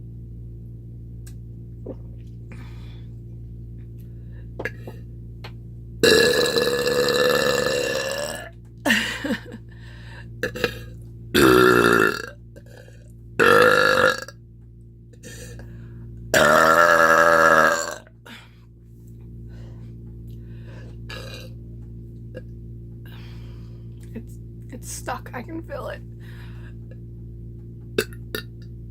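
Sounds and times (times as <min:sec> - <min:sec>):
woman belching loudly: 0:06.0 - 0:08.5, 0:10.4 - 0:12.4, 0:13.4 - 0:14.4, 0:16.3 - 0:18.1
small throat sounds: 0:28.0 - 0:28.6.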